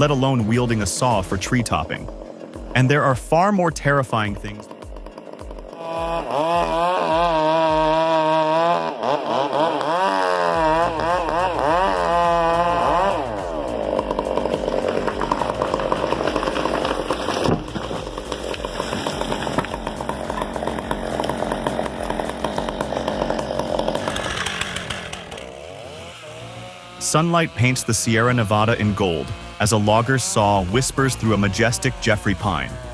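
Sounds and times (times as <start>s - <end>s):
chainsaw engine revving: 0.0s - 32.9s.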